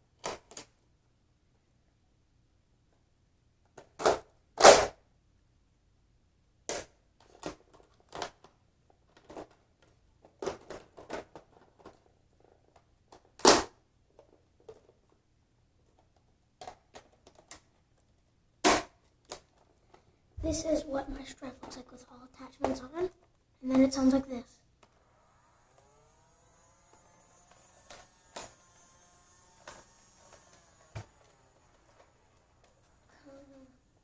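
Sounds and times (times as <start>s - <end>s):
plastic toy blaster clicks and snaps: 13.1s - 13.8s, 24.8s - 33.0s.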